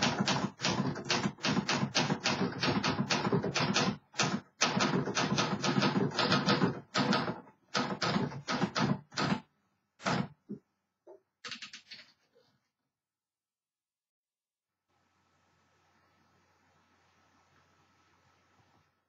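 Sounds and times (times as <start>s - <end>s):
manual typewriter keystrokes: 0.0s - 10.3s.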